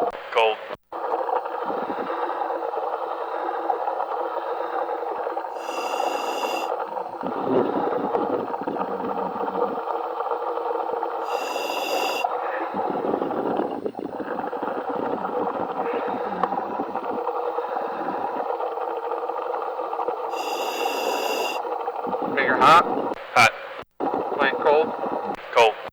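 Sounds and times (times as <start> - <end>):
noisy rumble with bubbling: 0.0 - 25.7.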